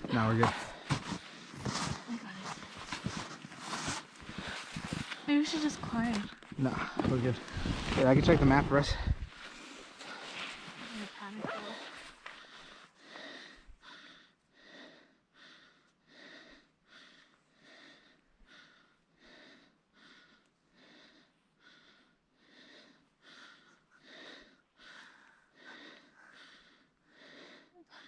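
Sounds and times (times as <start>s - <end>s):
fast heavy breathing: 0.0s - 8.0s, 8.8s - 28.0s.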